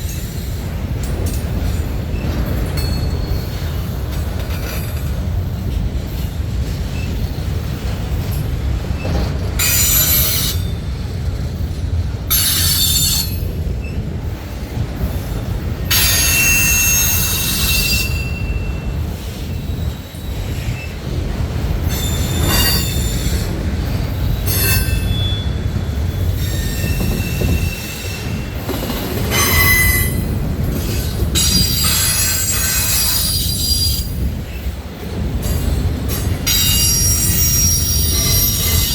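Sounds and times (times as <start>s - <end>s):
train cars rumbling past: 0.0s - 38.9s
steel wheel squeal: 9.0s - 10.8s, 12.3s - 14.0s, 15.9s - 18.8s, 21.9s - 23.4s, 24.3s - 34.2s, 36.5s - 38.9s.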